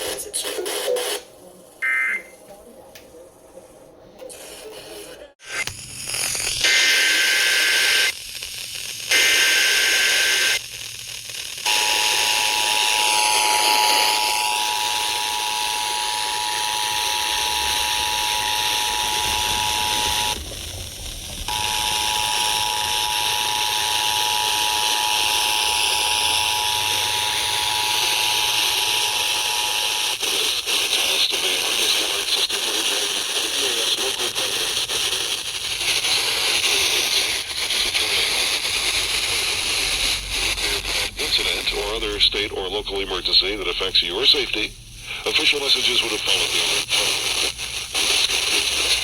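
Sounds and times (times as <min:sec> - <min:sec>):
radio hiss: 0:00.0 - 0:49.0
two-tone attention signal: 0:01.8 - 0:02.4
data header bursts: 0:05.9 - 0:32.6, 0:33.6 - 0:49.0.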